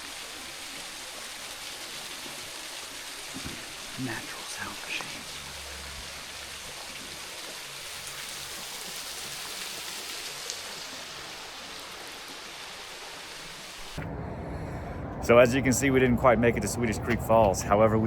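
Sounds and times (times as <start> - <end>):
creek water over small waterfalls: 0.0 - 14.0.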